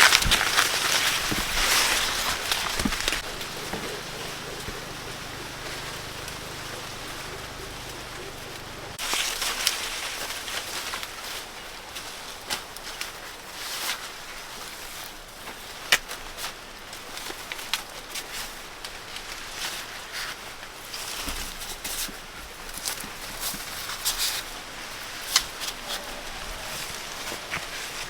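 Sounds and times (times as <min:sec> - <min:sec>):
dry corn plants rustling: 0:00.0 - 0:28.0
steady low hum: 0:00.1 - 0:09.0.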